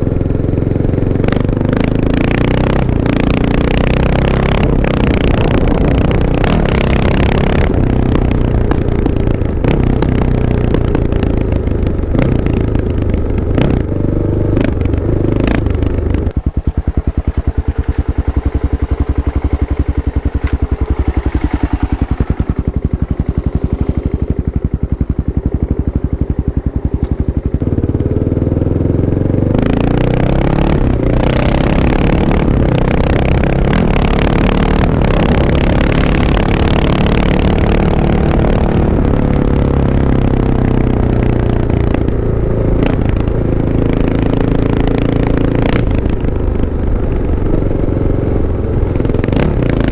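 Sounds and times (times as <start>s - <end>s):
motorcycle engine revving and idling: 0.0s - 49.9s.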